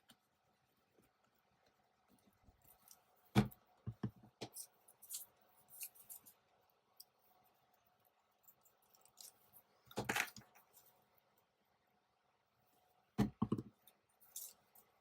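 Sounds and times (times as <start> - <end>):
knocks on desk: 13.2 - 13.7.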